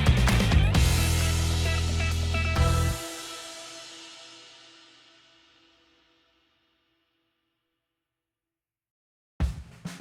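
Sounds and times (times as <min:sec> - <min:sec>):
background music held notes: 0:00.0 - 0:04.8.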